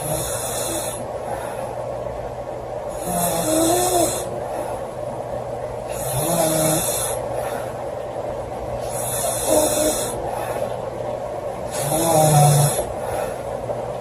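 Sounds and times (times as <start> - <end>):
girl snoring loudly: 0.0 - 1.0, 3.0 - 4.3, 5.9 - 7.2, 8.9 - 10.2, 11.7 - 12.9.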